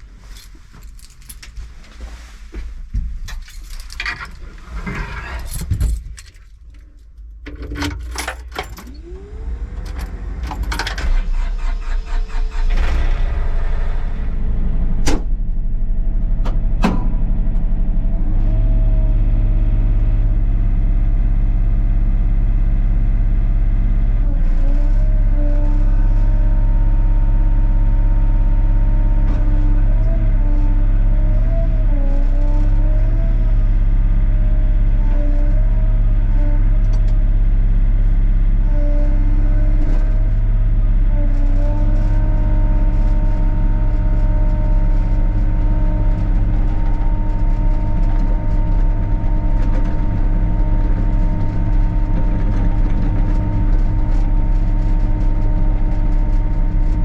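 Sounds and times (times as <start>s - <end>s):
excavator diesel engine running: 7.2s - 57.0s.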